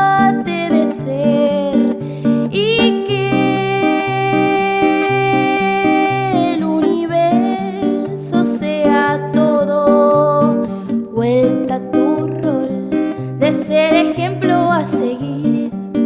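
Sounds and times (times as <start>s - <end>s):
plucked guitar figure: 0.0s - 16.0s.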